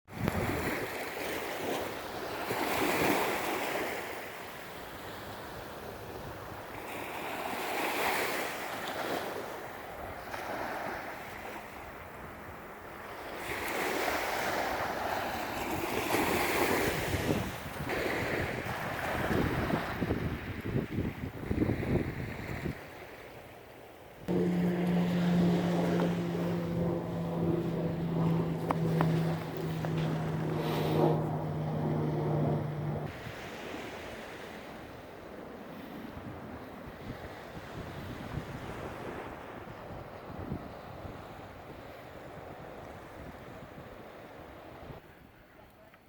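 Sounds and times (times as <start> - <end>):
wind: 0.1 - 46.0
wind buffeting microphone: 14.5 - 23.0, 24.3 - 35.0, 35.9 - 44.2
surf: 24.3 - 44.8.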